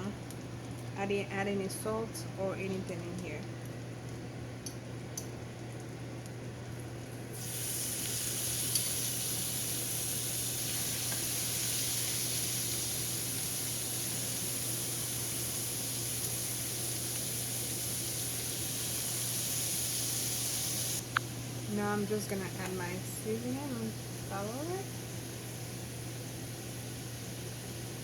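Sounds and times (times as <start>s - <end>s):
meat sizzling in a pan: 7.3s - 21.1s.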